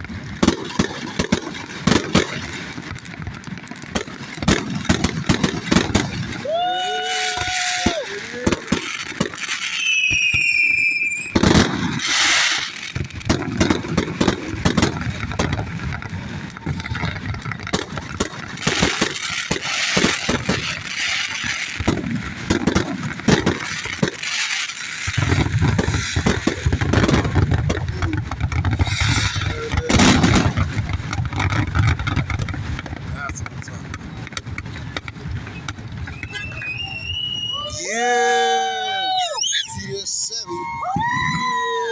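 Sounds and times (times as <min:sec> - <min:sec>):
fireworks bangs and crackles: 0:00.0 - 0:41.9
falling firework whistle: 0:06.3 - 0:13.0, 0:35.6 - 0:41.9.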